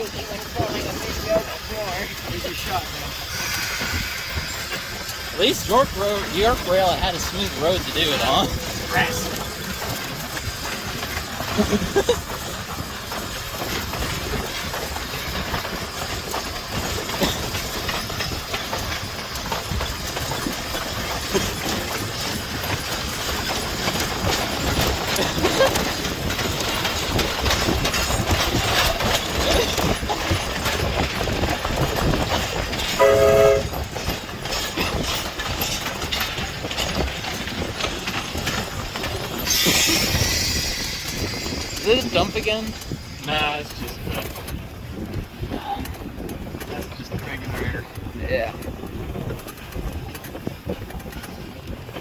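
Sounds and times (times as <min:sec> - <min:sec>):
train wheels clicking over rail joints: 0:00.0 - 0:52.0
chime train horn: 0:33.0 - 0:33.8.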